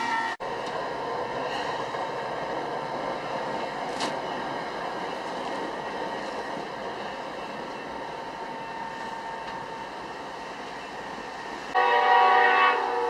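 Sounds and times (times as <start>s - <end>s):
train horn blast: 0.0s - 0.4s, 11.7s - 13.0s
train rumbling: 0.0s - 13.0s.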